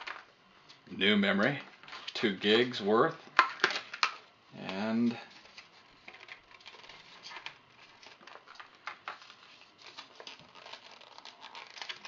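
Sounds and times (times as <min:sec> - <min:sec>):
plastic packaging crinkling: 0:05.0 - 0:12.0.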